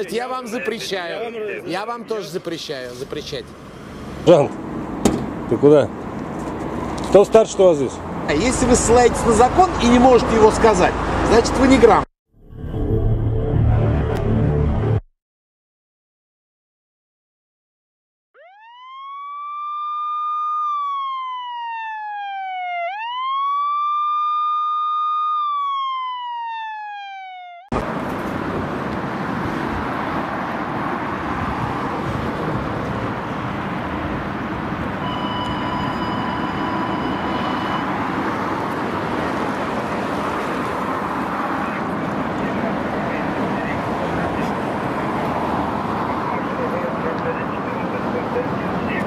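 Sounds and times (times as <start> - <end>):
street noise: 0.0 - 12.1, 24.5 - 49.0
police siren wail: 18.4 - 27.8, 30.0 - 48.8
steady beep: 35.0 - 38.0.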